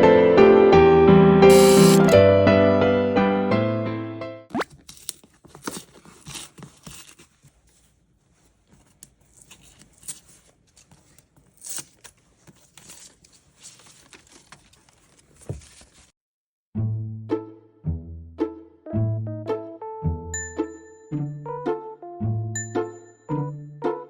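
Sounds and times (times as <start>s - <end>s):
packaging rustling and crinkling: 4.7s - 16.1s.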